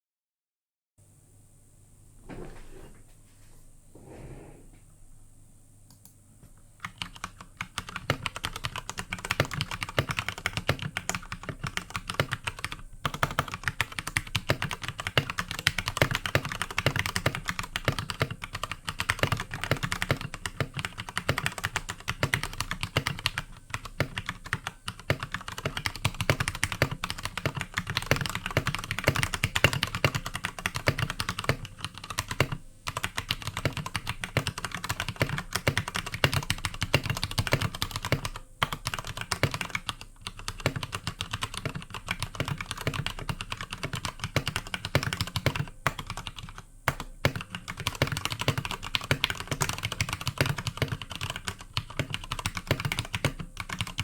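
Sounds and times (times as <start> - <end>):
mechanical keyboard keys clacking: 6.8 - 54.0.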